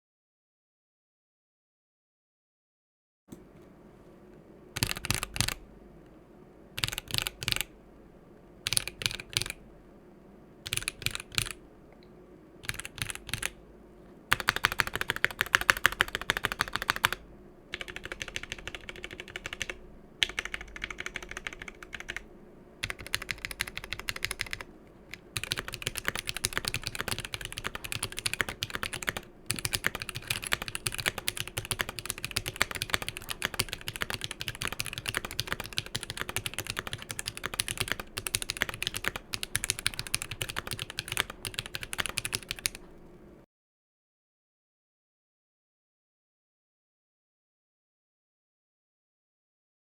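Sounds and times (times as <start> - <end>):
typing on mechanical keyboard: 4.8 - 5.6, 6.8 - 7.7, 8.6 - 9.6, 10.6 - 11.6, 12.6 - 13.6, 14.3 - 42.8.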